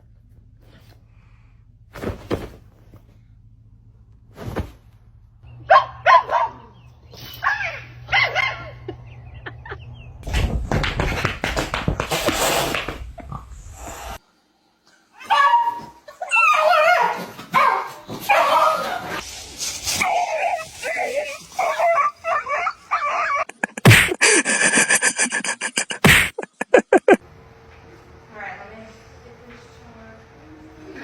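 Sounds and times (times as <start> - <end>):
rustling noise: 1.9 - 3.3, 4.2 - 5.1
dog barking and whimpering: 5.7 - 8.9, 15.2 - 19.2, 20.0 - 23.8.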